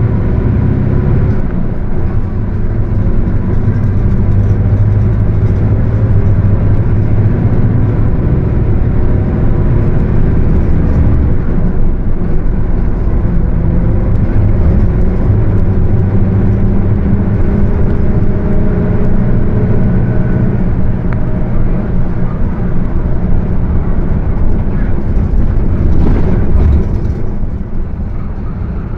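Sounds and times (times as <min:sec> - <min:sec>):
bus diesel engine running: 0:00.0 - 0:28.9
rear axle whine: 0:00.0 - 0:28.9.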